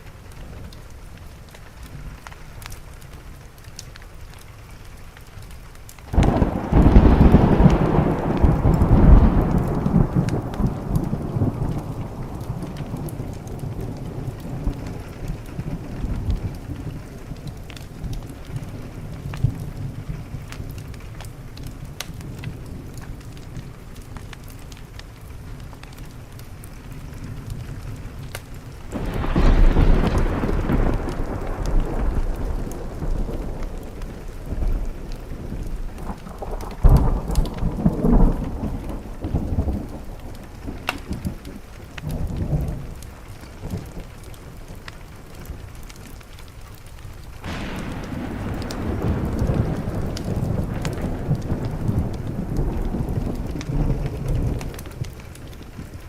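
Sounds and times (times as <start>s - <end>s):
rain on a window: 0.0s - 56.0s
wood fire crackling: 0.0s - 56.0s
thunder rolling: 6.1s - 21.0s, 27.0s - 45.7s, 47.2s - 56.0s.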